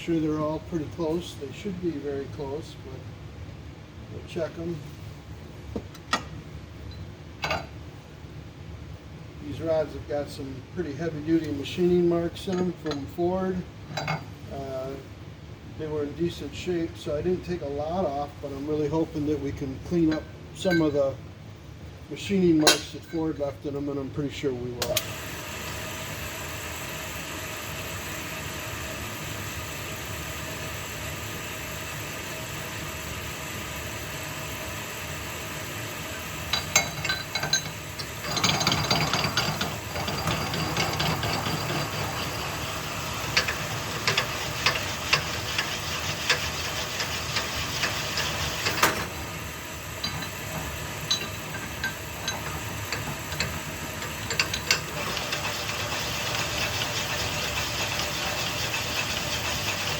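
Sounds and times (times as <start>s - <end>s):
honing machine motor hum: 25.1s - 59.9s
metal clinks: 50.0s - 55.1s.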